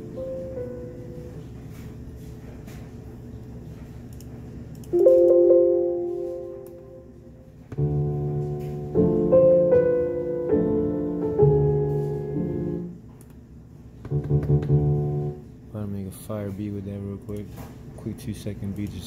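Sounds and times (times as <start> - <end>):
piano-like keyboard chords: 0.0 - 2.1, 4.8 - 13.1, 14.1 - 15.5.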